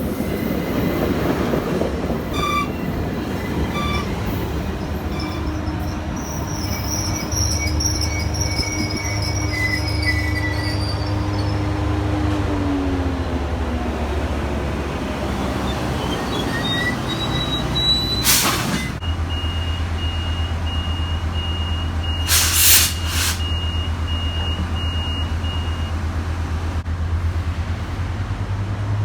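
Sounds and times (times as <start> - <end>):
diesel locomotive engine humming: 0.0 - 29.0
air hissing: 18.2 - 19.0, 22.3 - 23.6.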